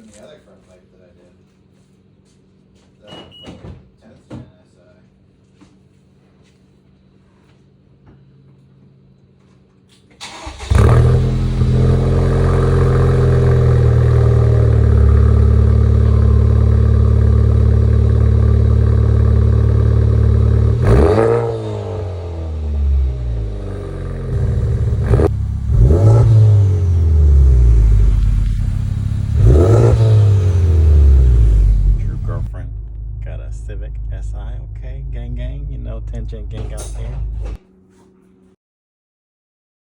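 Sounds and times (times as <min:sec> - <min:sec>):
car engine revving: 0:10.2 - 0:37.6
exhaust crack: 0:10.2 - 0:37.6.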